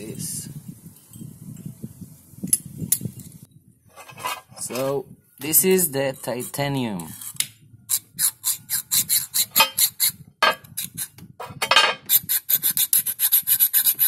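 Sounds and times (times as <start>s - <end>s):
hand file rasping on metal: 6.1s - 11.2s, 12.1s - 14.0s.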